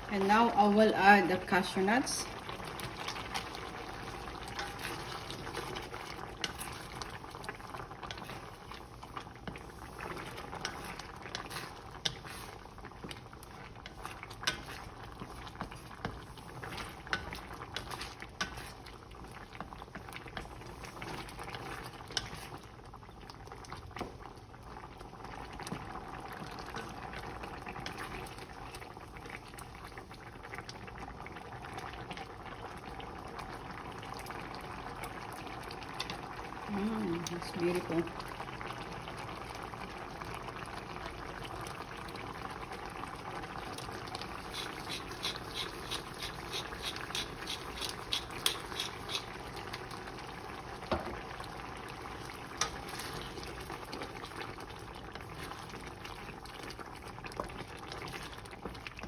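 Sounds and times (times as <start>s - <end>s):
curry sauce bubbling: 0.0s - 59.0s.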